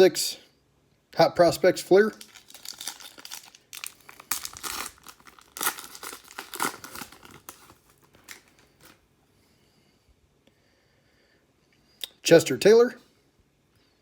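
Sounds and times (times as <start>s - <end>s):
foil wrapper tearing and crinkling: 2.0s - 9.0s.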